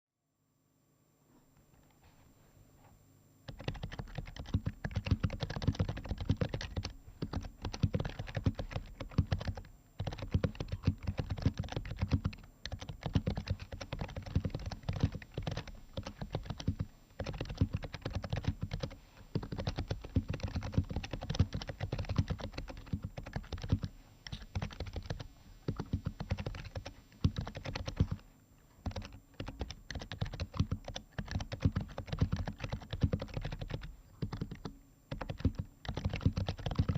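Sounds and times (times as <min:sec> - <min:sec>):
keyboard typing: 0:03.5 - 0:28.2, 0:28.8 - 0:36.9.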